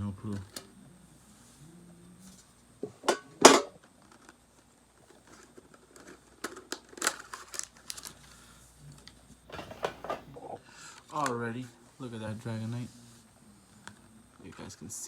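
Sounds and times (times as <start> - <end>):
plastic crinkling: 5.2 - 8.2
plastic shrink-wrap ripping: 6.6 - 8.2.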